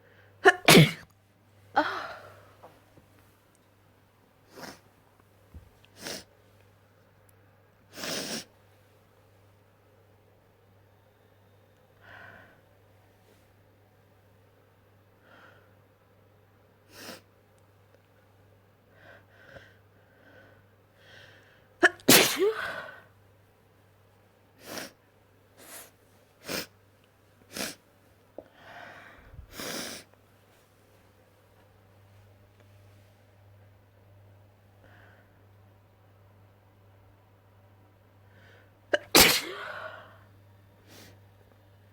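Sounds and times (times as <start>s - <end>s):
person sneezing: 0.4s - 1.1s, 21.8s - 23.0s, 39.0s - 40.2s
catching breaths: 28.4s - 30.1s.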